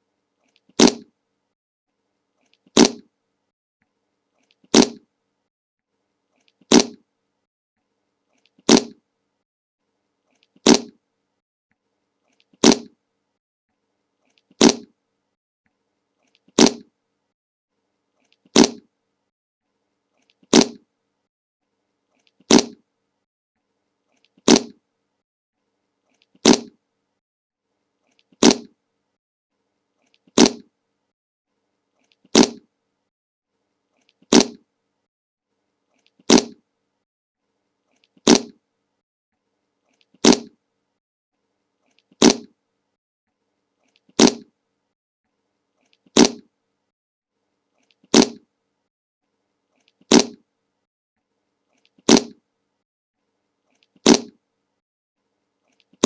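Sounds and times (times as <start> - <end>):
fart sound effect: 0.8 - 1.1, 2.7 - 3.1, 4.7 - 5.0, 6.7 - 7.0, 8.7 - 9.0, 10.6 - 11.0, 12.6 - 13.0, 14.6 - 14.9, 16.6 - 16.9, 18.5 - 18.9, 20.5 - 20.8, 22.5 - 22.8, 24.4 - 24.8, 26.4 - 26.8, 28.4 - 28.7, 30.4 - 30.7, 32.3 - 32.6, 34.3 - 34.6, 36.3 - 36.6, 38.2 - 38.6, 40.2 - 40.6, 42.2 - 42.5, 44.2 - 44.5, 46.2 - 46.5, 48.1 - 48.4, 50.1 - 50.4, 52.1 - 52.4, 54.0 - 54.4.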